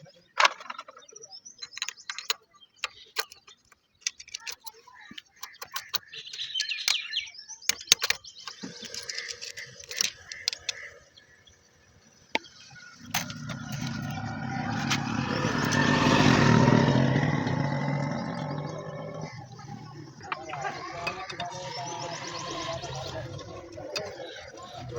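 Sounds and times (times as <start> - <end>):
vehicle engine running: 12.9 - 24.9.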